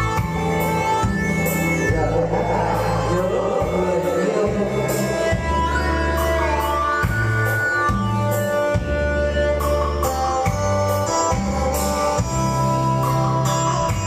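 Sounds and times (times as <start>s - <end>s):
instrumental band music: 0.0s - 14.0s.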